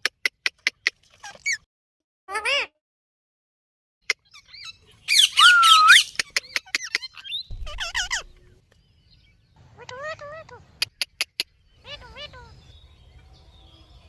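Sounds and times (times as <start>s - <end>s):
parrot warbling call: 4.6s - 6.1s, 7.5s - 8.4s
parrot harsh squawk: 4.6s - 6.2s, 7.6s - 8.3s.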